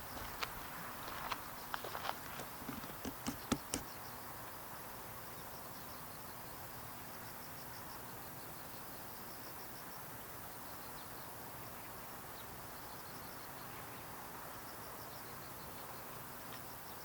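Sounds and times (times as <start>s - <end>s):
outdoor background hum: 0.0s - 4.1s.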